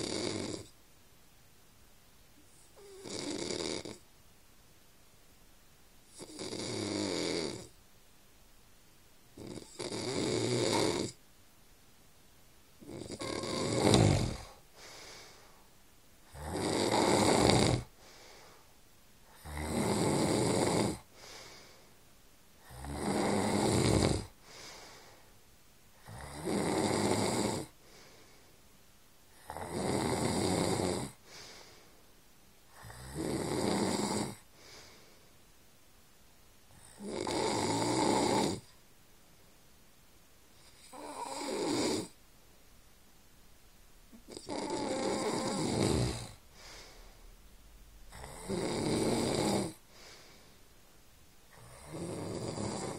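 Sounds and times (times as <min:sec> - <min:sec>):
man snoring: 0:00.0 - 0:00.7, 0:02.8 - 0:04.0, 0:06.1 - 0:07.7, 0:09.4 - 0:11.2, 0:12.8 - 0:14.6, 0:16.2 - 0:17.9, 0:19.3 - 0:21.1, 0:22.6 - 0:24.4, 0:26.0 - 0:27.8, 0:29.4 - 0:31.2, 0:32.7 - 0:34.4, 0:36.7 - 0:38.7, 0:40.6 - 0:42.2, 0:44.2 - 0:46.4, 0:48.1 - 0:49.8, 0:51.5 - 0:52.9
faint short breath out: 0:46.5 - 0:47.3.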